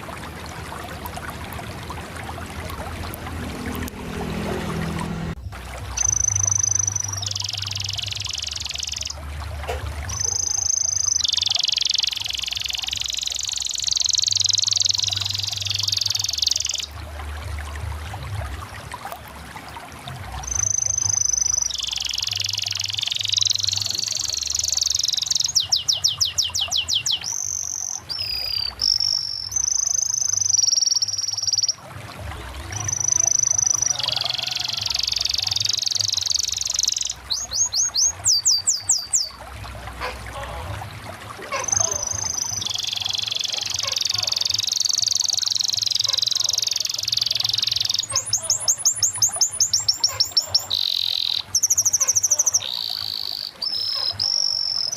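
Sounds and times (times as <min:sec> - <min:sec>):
canary singing trills: 0:06.0 - 0:09.4, 0:10.1 - 0:17.0, 0:20.4 - 0:31.8, 0:32.7 - 0:39.4, 0:41.5 - 0:54.9.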